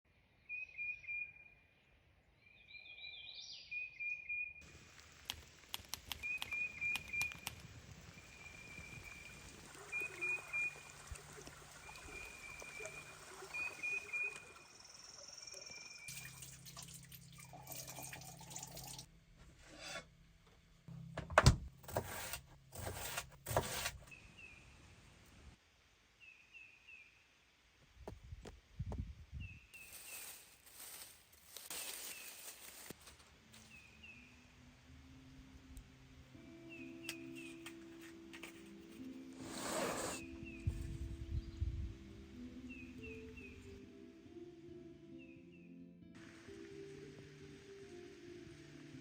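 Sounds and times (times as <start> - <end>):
small birds chirping: 2.4 - 16.2
running water trickling: 4.6 - 19.1.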